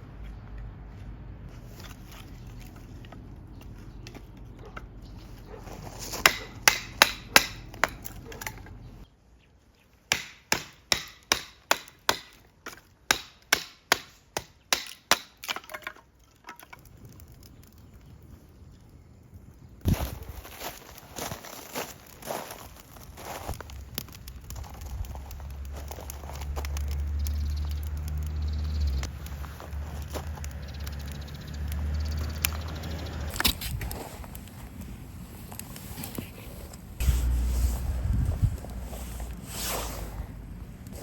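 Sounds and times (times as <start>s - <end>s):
hatchet chopping wood: 6.2s - 8.6s, 10.1s - 16.0s
low steady hum: 33.2s - 41.0s.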